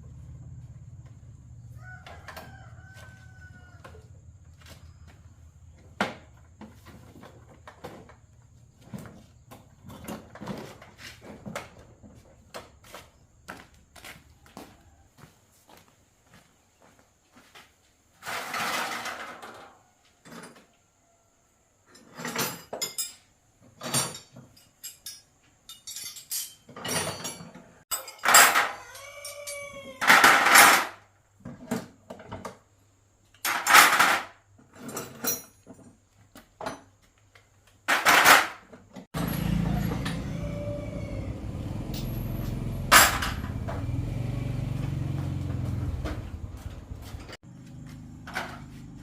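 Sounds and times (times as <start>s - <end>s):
metal tools clinking and clattering: 21.9s - 30.9s, 33.4s - 36.0s, 41.9s - 43.6s.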